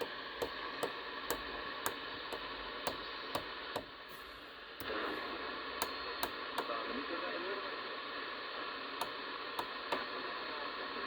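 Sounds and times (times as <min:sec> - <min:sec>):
radio channel selector clicking: 0:00.0 - 0:04.0, 0:04.8 - 0:06.8, 0:09.0 - 0:10.2
radio speaker hiss: 0:00.0 - 0:11.0.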